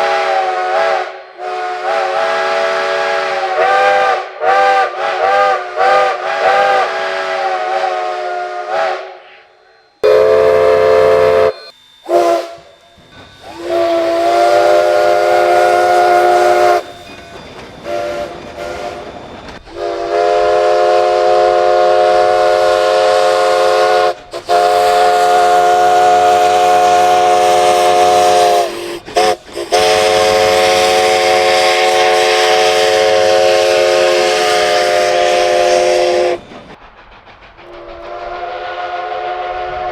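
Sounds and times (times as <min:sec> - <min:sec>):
steam locomotive chime whistle: 0:00.0 - 0:36.8, 0:37.7 - 0:39.9
steam hissing: 0:00.0 - 0:39.9.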